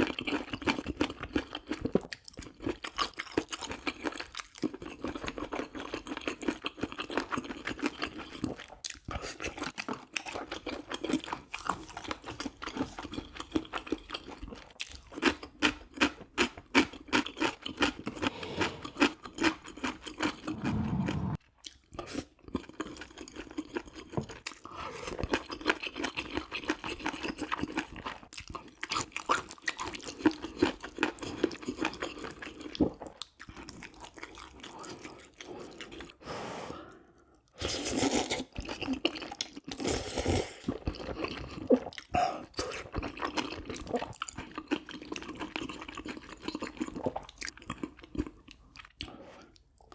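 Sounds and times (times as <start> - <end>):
person chewing and crunching food: 0.0 - 36.3, 36.9 - 49.9
heavier low sound: 20.4 - 21.4.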